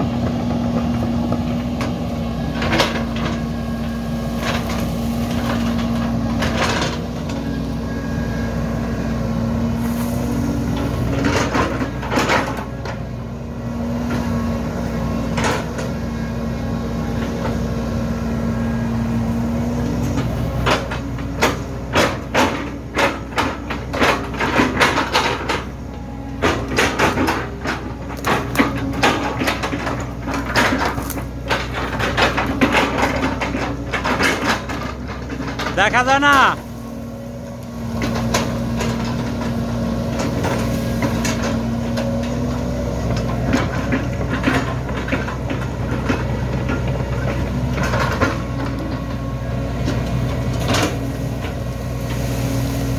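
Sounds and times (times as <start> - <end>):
excavator engine running: 0.0 - 52.9
sharp cracks and knocks of wood: 26.4 - 36.6.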